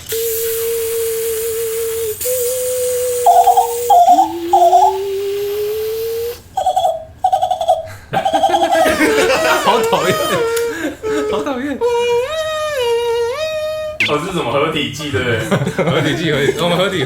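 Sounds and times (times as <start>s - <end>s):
beatboxer pulsing call: 0.0s - 10.6s
beatboxer humming steady tone: 0.0s - 11.2s, 12.1s - 14.2s.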